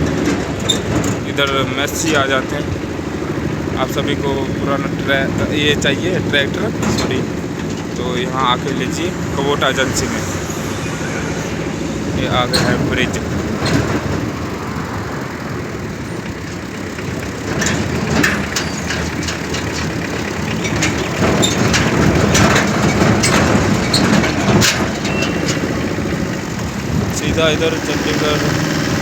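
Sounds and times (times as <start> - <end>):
traffic noise: 0.0 - 29.0
vehicle engine and road rumble: 0.0 - 29.0.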